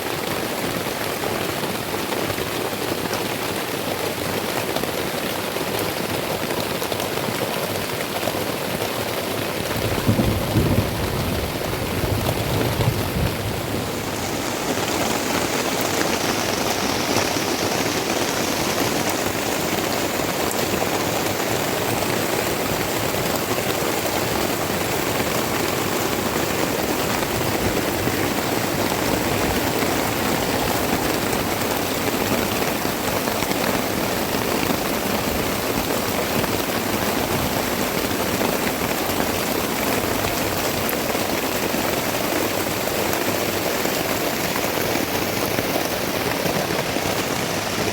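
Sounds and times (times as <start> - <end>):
heavy rain pouring: 0.0 - 47.9.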